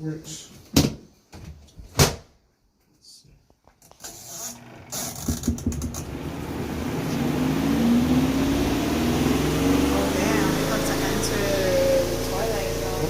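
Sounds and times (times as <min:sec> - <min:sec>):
spin-dryer motor humming: 0:04.2 - 0:13.0.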